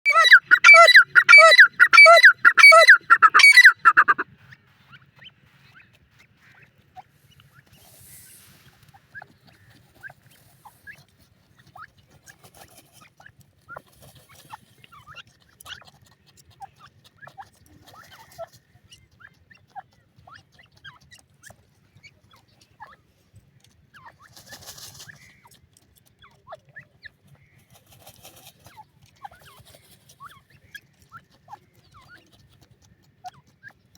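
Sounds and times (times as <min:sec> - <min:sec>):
partridge calling harshly: 0:00.1 - 0:04.2.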